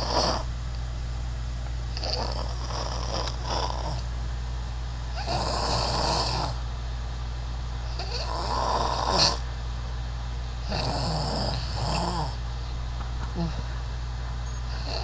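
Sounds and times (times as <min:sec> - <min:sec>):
person snoring: 0:00.0 - 0:00.5, 0:02.0 - 0:04.0, 0:05.2 - 0:06.6, 0:07.9 - 0:09.4, 0:10.6 - 0:12.4, 0:13.4 - 0:13.7, 0:14.7 - 0:15.0.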